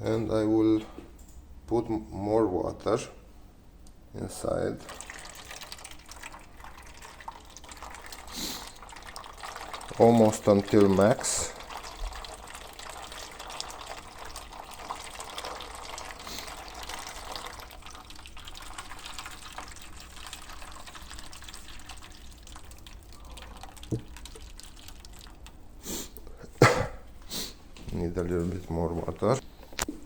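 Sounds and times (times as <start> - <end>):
water pouring into tank: 4.7 - 25.6.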